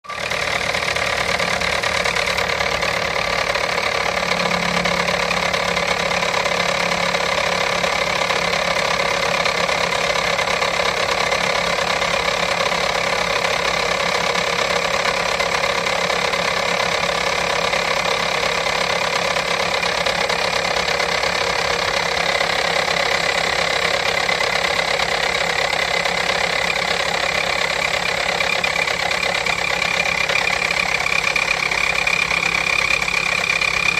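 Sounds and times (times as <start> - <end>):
abnormal engine noise: 0.0 - 33.9
car engine idling: 0.0 - 33.9.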